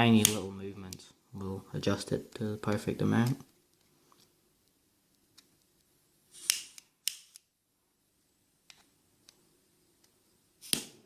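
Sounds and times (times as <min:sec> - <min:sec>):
piezo igniter snap: 0:00.2 - 0:01.0, 0:06.4 - 0:07.4.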